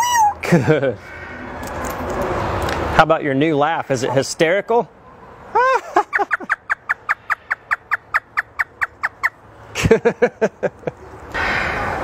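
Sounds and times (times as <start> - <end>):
parrot imitating hysterical laugh: 5.5 - 9.4.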